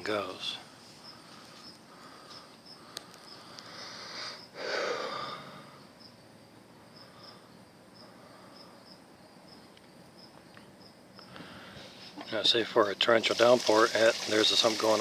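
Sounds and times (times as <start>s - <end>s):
insects chirping: 0.0s - 15.0s
person breathing loudly: 1.2s - 5.9s.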